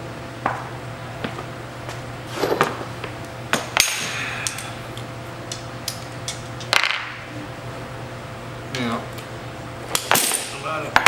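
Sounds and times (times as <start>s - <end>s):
metal tools clanking on metal: 9.9s - 10.8s.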